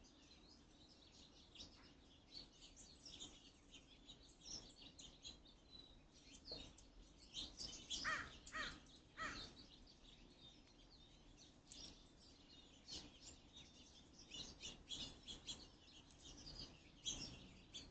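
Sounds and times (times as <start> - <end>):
small birds chirping: 0.0 - 17.9
crow cawing: 8.0 - 9.5.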